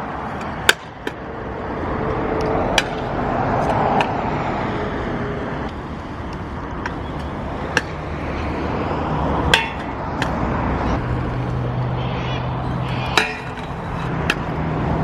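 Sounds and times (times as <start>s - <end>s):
scooter wheels rolling on concrete: 0.0s - 15.0s
scooter clacking on ground: 12.9s - 14.6s.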